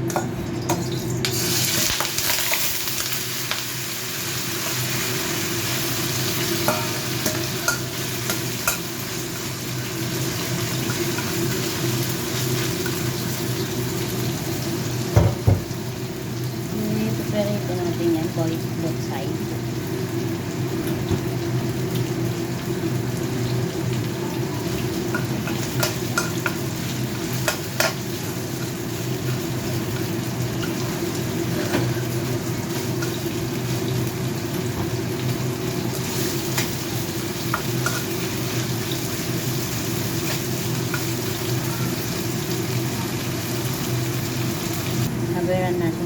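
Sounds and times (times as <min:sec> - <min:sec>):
chicken sizzling in hot oil: 0:00.0 - 0:45.4.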